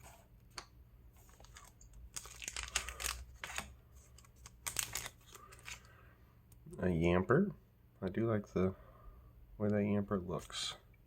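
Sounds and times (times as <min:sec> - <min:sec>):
trading cards clicking and rustling: 0:01.3 - 0:05.9.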